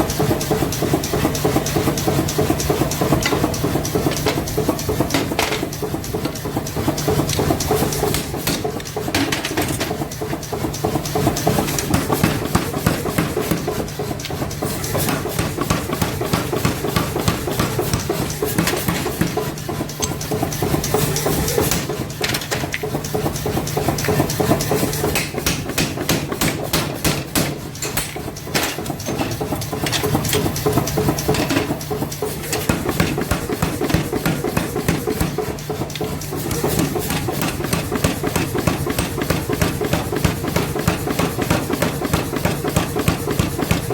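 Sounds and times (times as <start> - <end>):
steady machine hum: 0.0 - 43.9
hammer striking hot steel: 7.9 - 10.0, 25.0 - 30.5.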